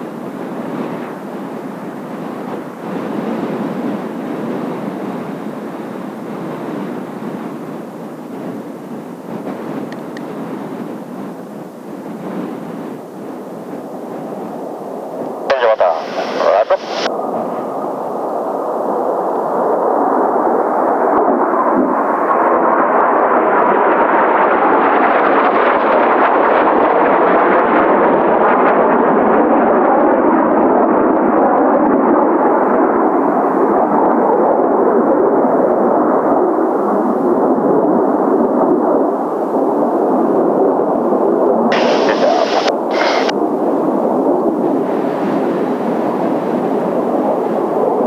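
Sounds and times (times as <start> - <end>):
wind on microphone: 0.0 - 48.0
high hisses: 41.7 - 43.3
jet aircraft rushing past: 41.7 - 43.4.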